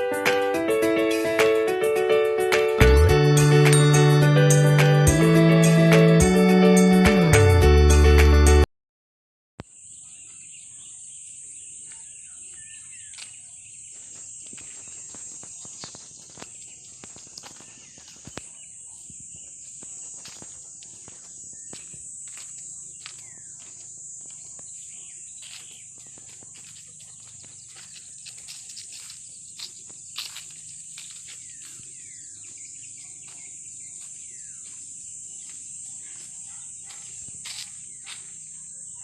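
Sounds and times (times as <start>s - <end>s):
bird chirps: 9.6s - 39.0s
insects chorus: 9.6s - 39.0s.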